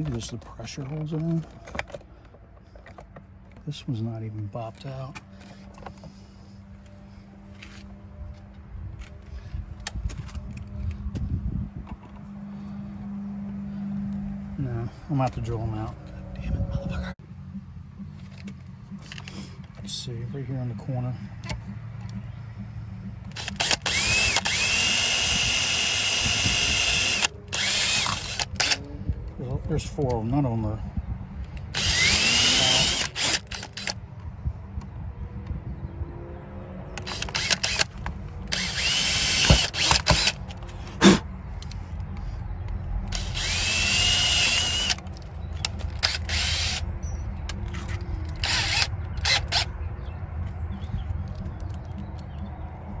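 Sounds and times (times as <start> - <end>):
power drill whining: 23.3 - 28.8, 31.8 - 33.9, 37.0 - 40.6, 43.1 - 45.0, 45.8 - 46.8, 48.2 - 49.7.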